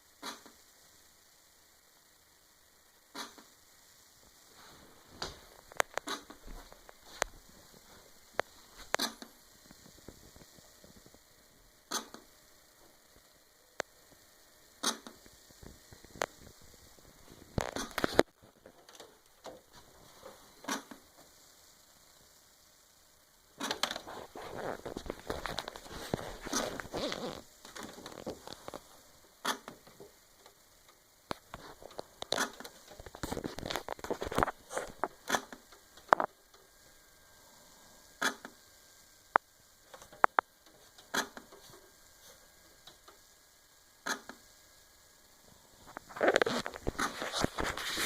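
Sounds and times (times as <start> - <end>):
tv speakers popping: 0.2 - 0.6, 3.1 - 3.6, 5.1 - 13.2, 13.8 - 21.5, 23.6 - 36.7, 38.2 - 38.6, 39.3 - 41.8, 44.0 - 44.5, 45.8 - 48.0.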